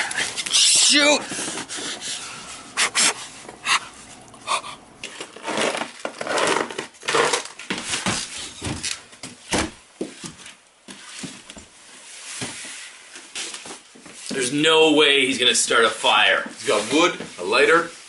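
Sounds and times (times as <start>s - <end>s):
short breathy puffs: 1.2s - 5.0s
rustling and crumpling: 5.0s - 9.4s.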